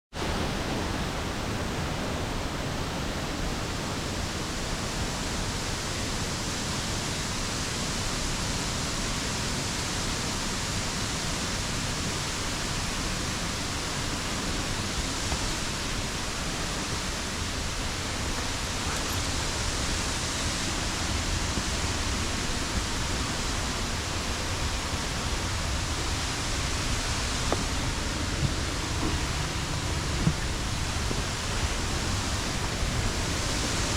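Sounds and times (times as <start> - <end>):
waterfall rushing: 0.2 - 33.9.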